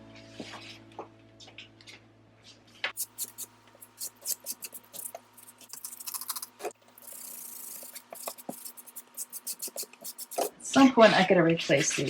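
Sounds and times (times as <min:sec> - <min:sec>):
scrubbing clicks taps and scrapes: 0:02.9 - 0:10.5.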